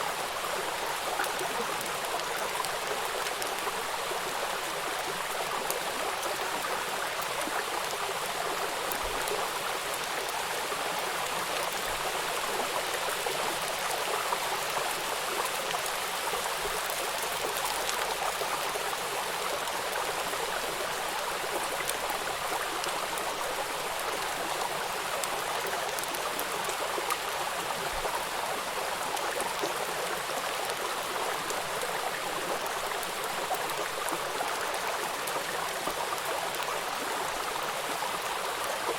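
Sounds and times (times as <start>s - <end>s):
stream flowing: 0.0s - 38.9s.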